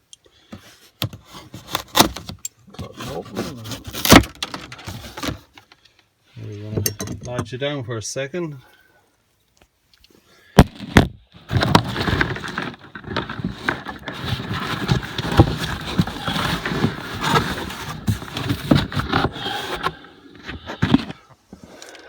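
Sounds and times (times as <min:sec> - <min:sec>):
anvil scraping and rattling in box: 0:11.5 - 0:21.2.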